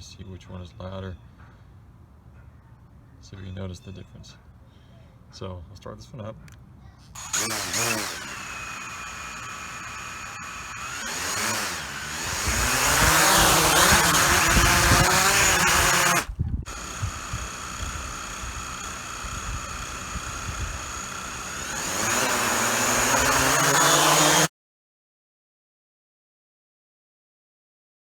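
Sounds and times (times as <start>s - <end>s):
drone propellers whirring: 7.2s - 24.5s.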